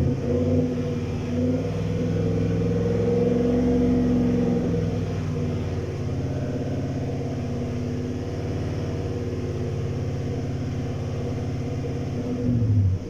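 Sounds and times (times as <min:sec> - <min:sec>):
engine idling with misfire: 0:03.9 - 0:13.0.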